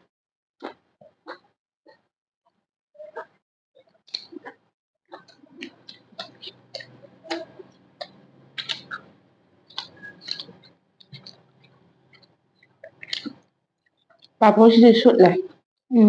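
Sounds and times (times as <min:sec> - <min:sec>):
person crunching and chewing: 0:04.1 - 0:13.4.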